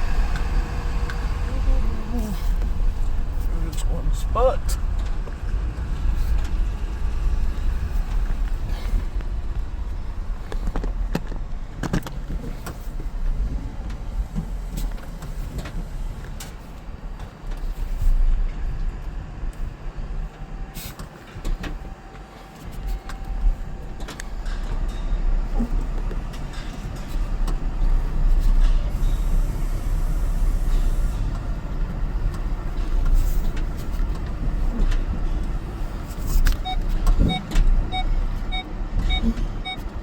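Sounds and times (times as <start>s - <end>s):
vehicle engine rumbling: 0.0s - 40.0s.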